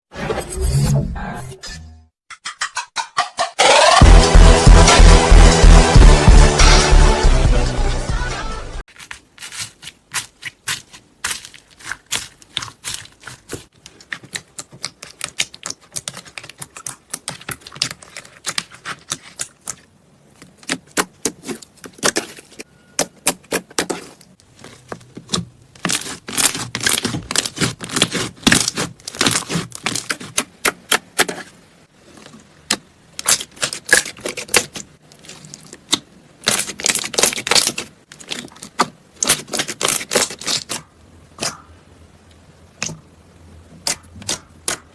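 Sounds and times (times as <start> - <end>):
slime crackling and popping: 32.7 - 40.8.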